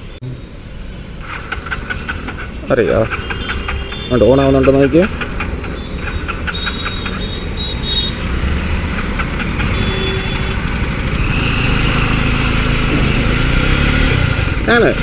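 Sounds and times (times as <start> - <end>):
vehicle engines running: 0.0 - 15.0.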